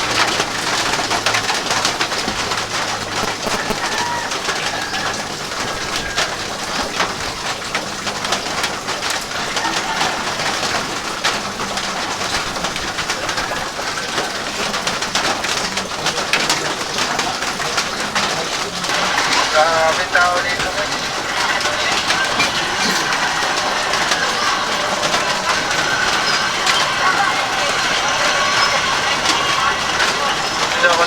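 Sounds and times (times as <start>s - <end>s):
steady rain falling: 0.0s - 31.0s
pigeon cooing: 2.8s - 7.1s.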